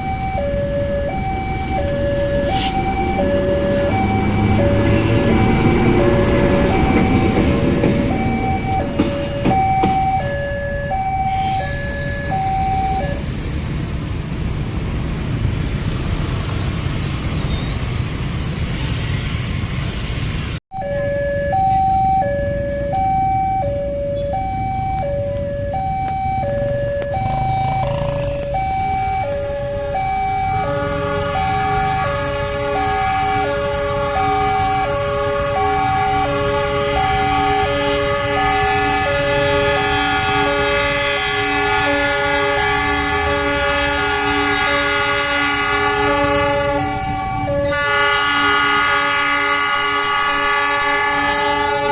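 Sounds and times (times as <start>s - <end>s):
level crossing two-tone alarm: 0.0s - 13.2s, 20.7s - 40.5s, 44.3s - 48.6s
low rumble of trains: 0.0s - 20.6s, 21.5s - 51.9s.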